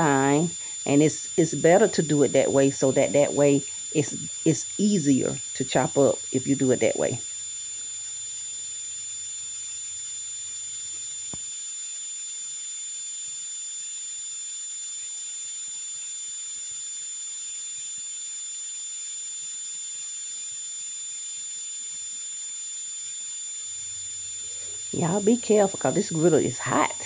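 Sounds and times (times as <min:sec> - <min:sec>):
high-pitched whine: 0:00.0 - 0:27.0
small click: 0:11.3 - 0:11.5.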